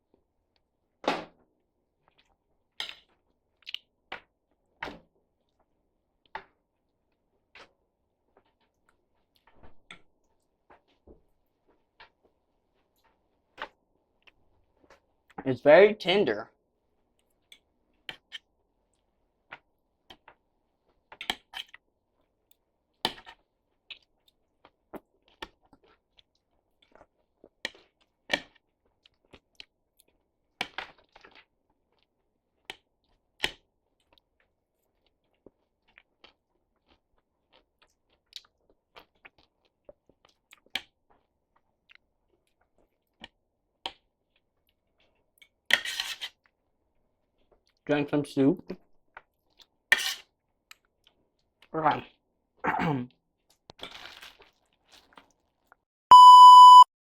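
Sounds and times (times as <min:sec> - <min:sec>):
person chewing food: 0:02.0 - 0:04.6, 0:10.2 - 0:15.4, 0:17.1 - 0:47.8, 0:49.0 - 0:52.3, 0:53.4 - 0:55.8.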